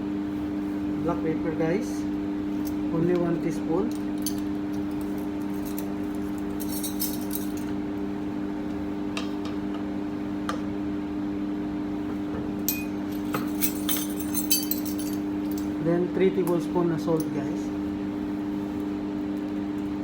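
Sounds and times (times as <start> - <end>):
measuring spoon clinking: 12.7 - 15.2.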